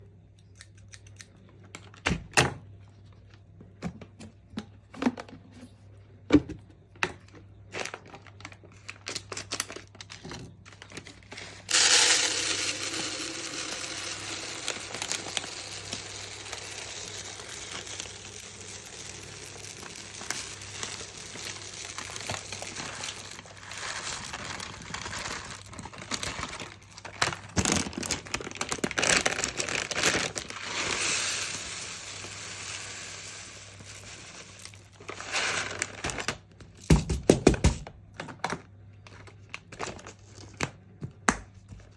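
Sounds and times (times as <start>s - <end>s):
packaging crinkling: 7.8s - 36.5s
containers clicking and knocking: 11.7s - 38.6s.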